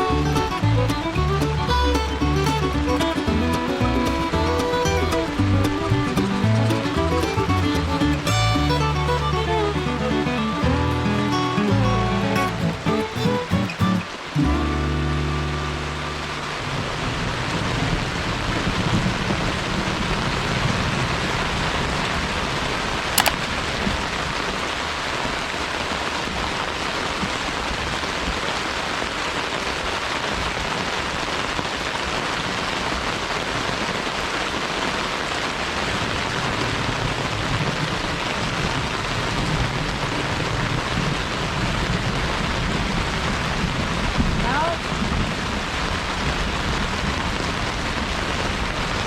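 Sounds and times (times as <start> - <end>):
steady rain falling: 0.0 - 49.0
sharp click: 23.2 - 23.6.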